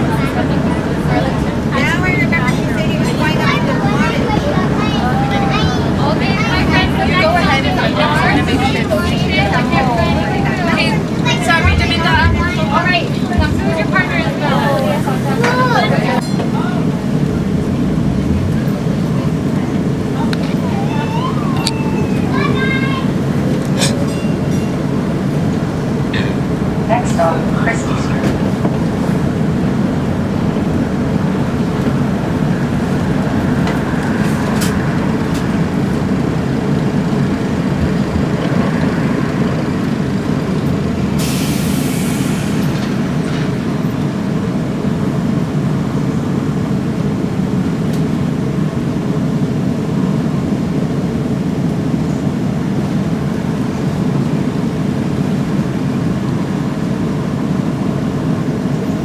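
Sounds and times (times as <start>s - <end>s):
streetcar rumbling on rails: 0.0s - 59.0s
air hiss: 41.2s - 42.8s.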